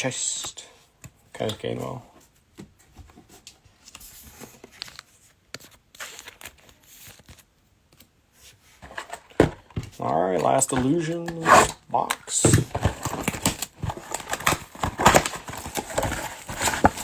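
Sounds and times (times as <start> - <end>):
cards sliding and tapping: 3.9 - 8.1.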